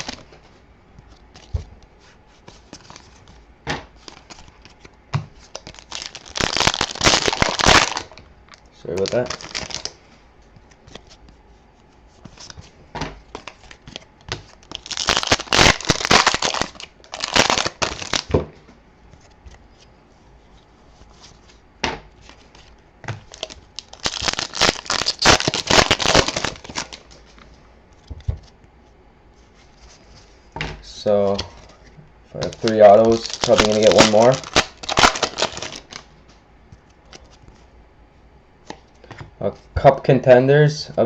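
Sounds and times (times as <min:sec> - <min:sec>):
card pack wrappers tearing: 0:05.4 - 0:08.2, 0:08.8 - 0:10.0, 0:13.3 - 0:18.3, 0:22.2 - 0:27.2, 0:32.4 - 0:36.1.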